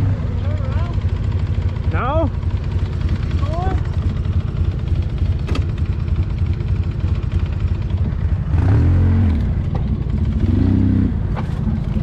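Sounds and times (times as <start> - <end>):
atv engine revving: 0.0 - 12.0.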